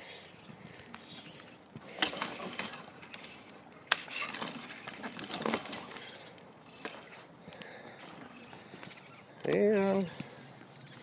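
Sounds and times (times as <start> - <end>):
wire cage trap rattling: 3.9 - 6.1.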